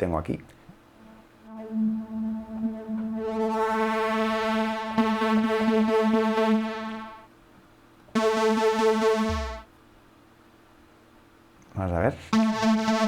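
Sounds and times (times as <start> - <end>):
synthesizer held pulsing note: 1.0 - 7.3, 8.2 - 9.7, 12.4 - 13.0.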